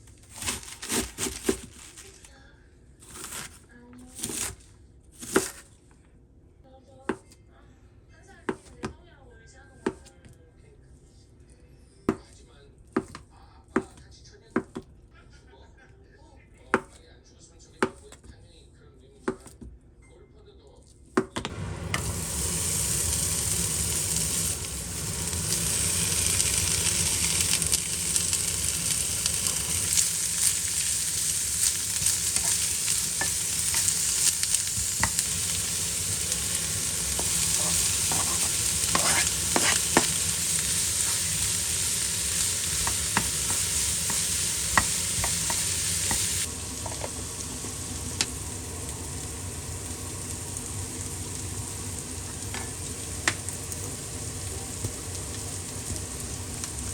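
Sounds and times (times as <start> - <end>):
food sizzling in frying pan: 21.5 - 56.9
utensil scraping against pan: 28.9 - 47.2.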